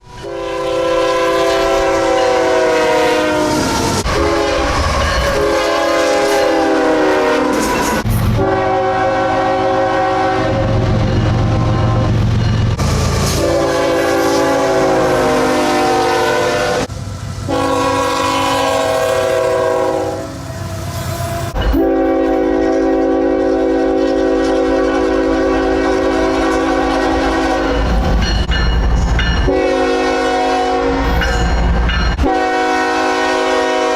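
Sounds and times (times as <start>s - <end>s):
locomotive horn chords: 0.0s - 12.3s, 13.2s - 27.9s, 29.4s - 31.2s, 32.2s - 33.9s
low locomotive rumble: 8.0s - 33.8s.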